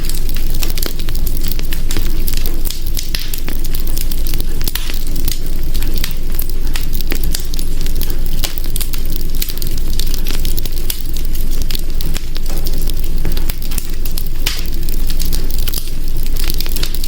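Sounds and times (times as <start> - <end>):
fire crackling and popping: 0.0 - 17.0.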